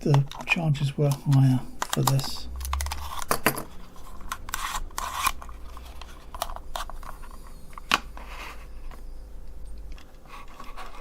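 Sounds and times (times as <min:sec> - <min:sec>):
small objects clicking and rustling: 0:00.0 - 0:07.2
faint low hum: 0:00.0 - 0:11.0.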